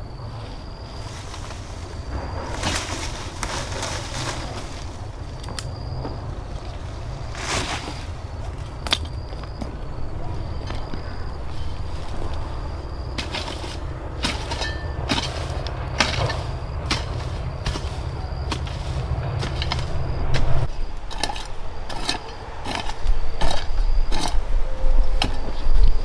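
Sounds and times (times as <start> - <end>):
steady low rumble: 0.0 - 26.0
hand tool striking: 10.6 - 26.0.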